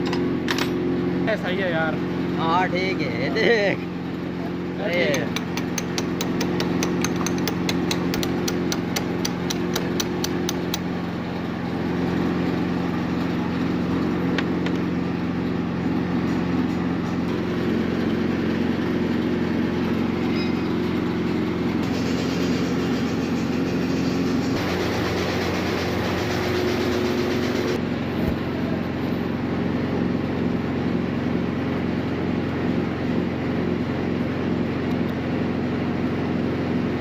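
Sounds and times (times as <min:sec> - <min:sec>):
truck engine running: 0:00.0 - 0:37.0
rapid high ticking: 0:05.1 - 0:10.9.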